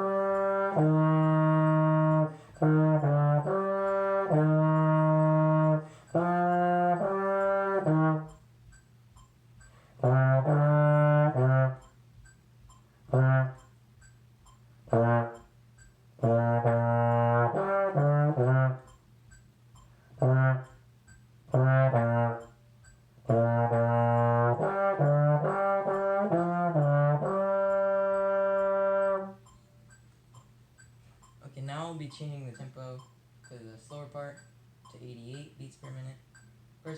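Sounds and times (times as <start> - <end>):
solo trombone: 0.0 - 8.4, 10.0 - 11.9, 13.1 - 13.7, 14.8 - 15.5, 16.2 - 18.9, 20.2 - 20.8, 21.5 - 22.5, 23.2 - 29.4
metronome clicking: 0.0 - 36.9.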